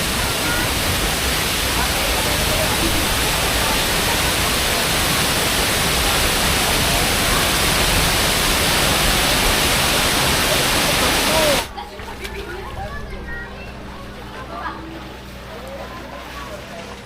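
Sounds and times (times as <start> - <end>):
waterfall pouring: 0.0 - 11.7
faint voices: 0.0 - 17.0.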